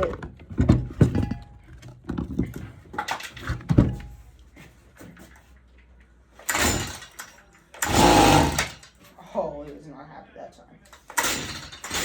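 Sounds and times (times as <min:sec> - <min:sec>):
recoil starter cord pulls: 0:07.8 - 0:08.9.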